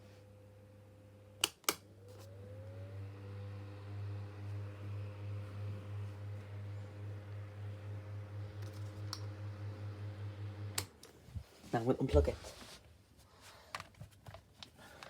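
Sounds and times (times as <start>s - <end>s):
desk fan motor humming: 2.3s - 11.4s.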